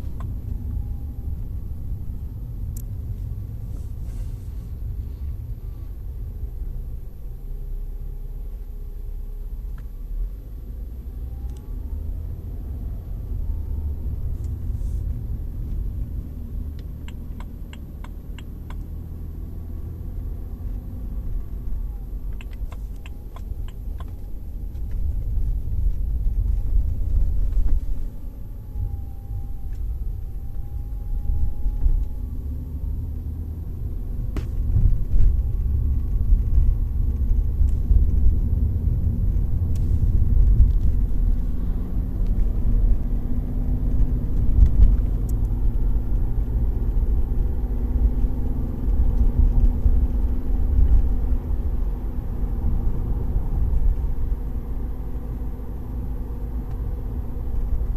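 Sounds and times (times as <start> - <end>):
car cabin rumble while driving: 0.0 - 57.9
faint dashboard clicks: 0.1 - 0.7, 16.6 - 19.0, 20.7 - 28.1.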